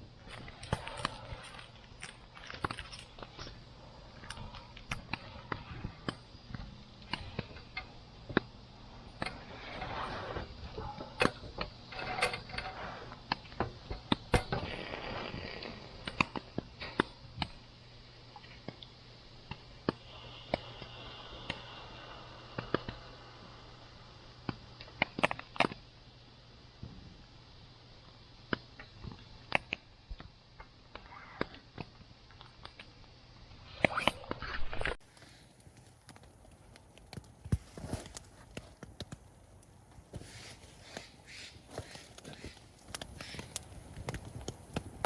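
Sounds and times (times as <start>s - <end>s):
campfire crackling: 0.0s - 16.4s, 35.0s - 45.0s
hissing and rustling: 35.0s - 45.0s.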